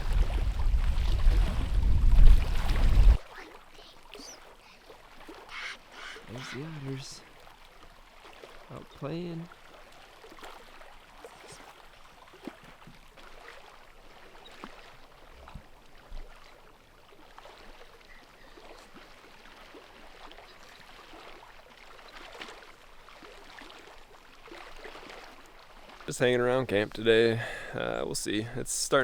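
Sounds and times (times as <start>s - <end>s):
lake water lapping against shore: 0.0s - 29.0s.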